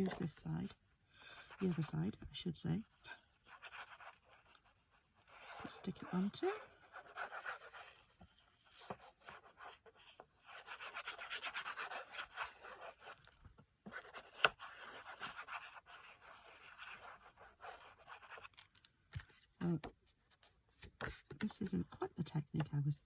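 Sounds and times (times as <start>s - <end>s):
rubbing on card stock: 2.9s - 18.6s.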